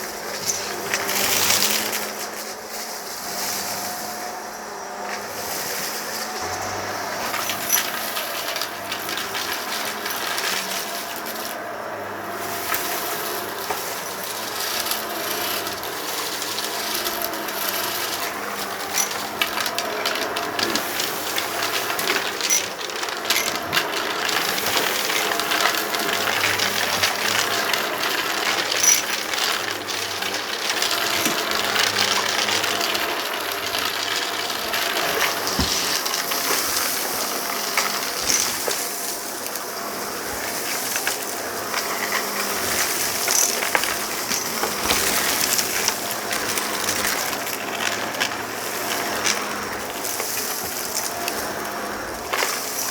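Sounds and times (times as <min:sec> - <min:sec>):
debris rattling in vacuum: 0:00.0 - 0:52.9
vacuum cleaner running: 0:00.0 - 0:52.9.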